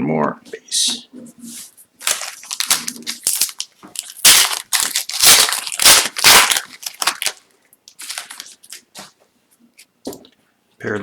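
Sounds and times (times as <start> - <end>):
foil wrapper crinkling and tearing: 2.0 - 8.8.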